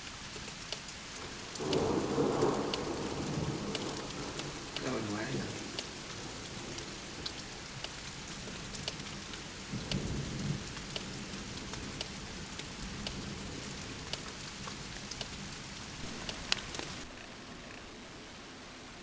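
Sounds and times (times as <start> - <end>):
steady rain: 0.0 - 19.0
low rumble of thunder: 1.6 - 14.1.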